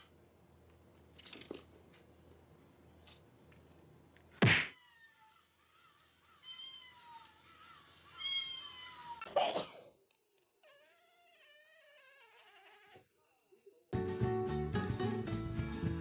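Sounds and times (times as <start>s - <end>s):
sharp thump: 4.4s - 4.7s.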